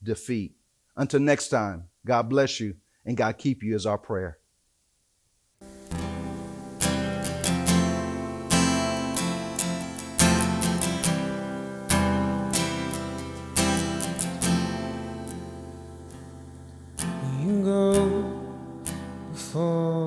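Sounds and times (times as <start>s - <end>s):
acoustic guitar strumming chords: 5.6s - 20.0s.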